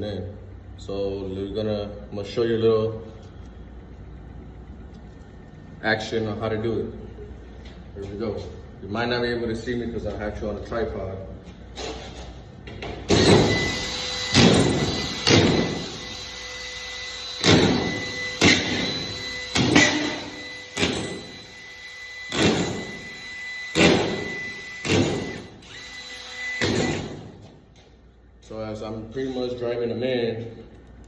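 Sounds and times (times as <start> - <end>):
screw gun driving screws: 13.1 - 21.4, 22.1 - 27.3.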